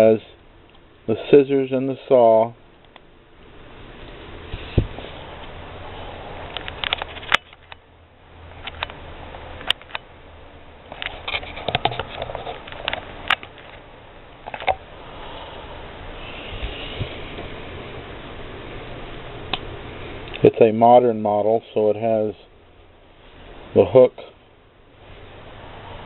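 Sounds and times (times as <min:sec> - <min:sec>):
steady hiss: 0:00.0 - 0:06.8, 0:12.4 - 0:26.0.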